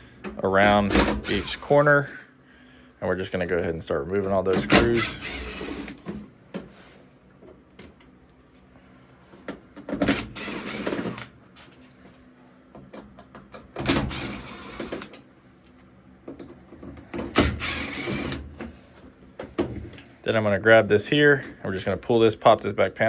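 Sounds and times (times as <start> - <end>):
power drill running: 0.8 - 2.0, 4.6 - 6.1, 10.0 - 11.3, 13.8 - 15.2, 17.3 - 18.6.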